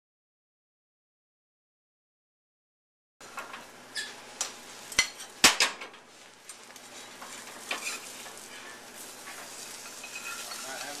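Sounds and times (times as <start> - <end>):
eggs sizzling: 3.2 - 11.0
utensils scraping a pan: 6.9 - 11.0.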